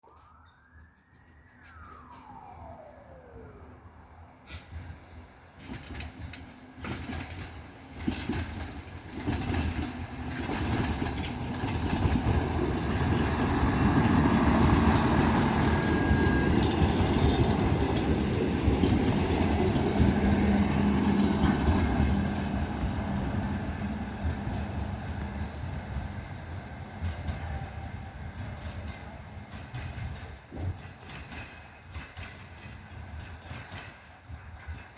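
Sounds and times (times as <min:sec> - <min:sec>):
train wheels rumbling on rails: 0:04.4 - 0:34.9.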